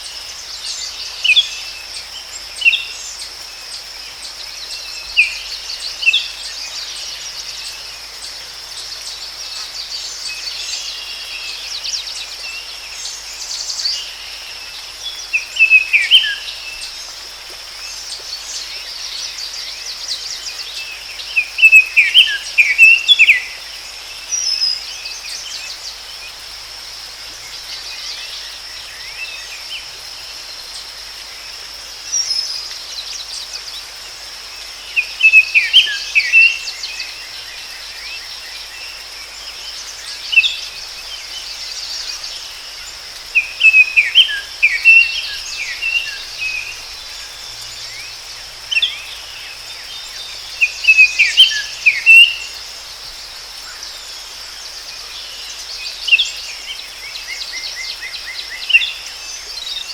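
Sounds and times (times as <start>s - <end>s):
songbird chirping: 0.0s - 59.9s.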